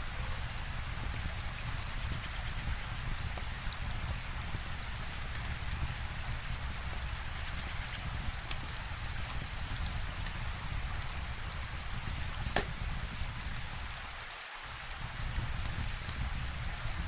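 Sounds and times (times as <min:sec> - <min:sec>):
steady rain falling: 0:00.0 - 0:17.0
wood fire crackling and popping: 0:00.1 - 0:13.8, 0:14.9 - 0:17.0.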